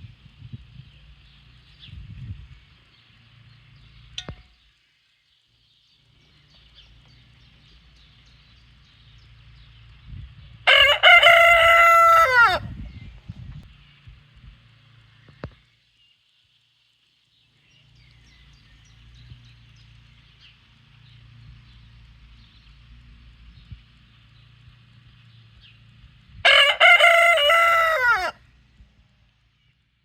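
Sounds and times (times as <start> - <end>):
rooster crowing: 10.6 - 12.8, 26.4 - 28.4.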